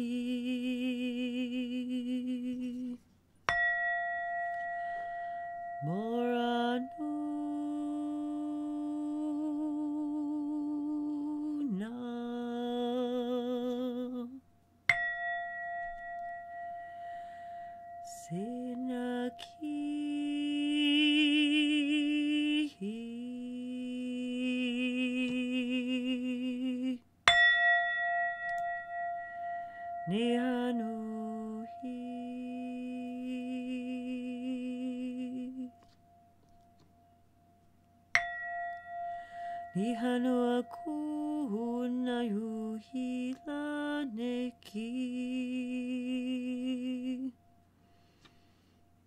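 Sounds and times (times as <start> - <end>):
metal bell ringing: 3.5 - 6.0, 14.9 - 19.4, 27.3 - 30.5, 38.2 - 39.8.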